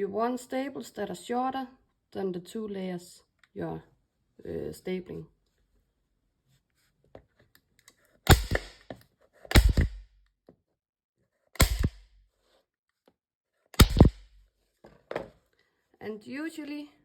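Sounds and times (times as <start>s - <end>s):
stapler firing into wood: 8.3s - 10.1s, 11.6s - 12.1s, 13.8s - 14.3s.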